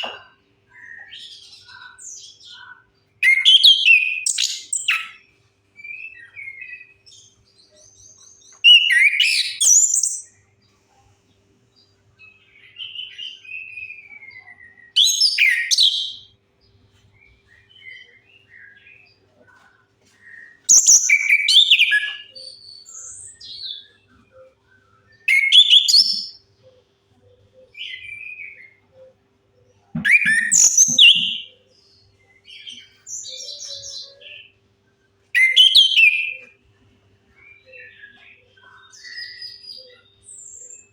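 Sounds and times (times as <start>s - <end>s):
bird twittering and whistling: 0.8s - 5.2s, 8.5s - 10.4s, 12.8s - 16.3s, 20.4s - 26.8s, 30.0s - 31.6s, 35.4s - 36.6s.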